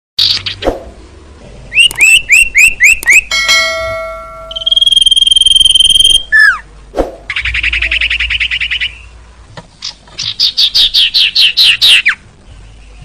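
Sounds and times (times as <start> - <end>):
falling bird whistle: 1.7 - 3.3, 4.5 - 6.6
high rapid bird trill: 1.7 - 6.6, 7.3 - 9.2, 9.8 - 12.2
songbird chirps: 4.4 - 13.0
bird whistled note: 4.5 - 6.6.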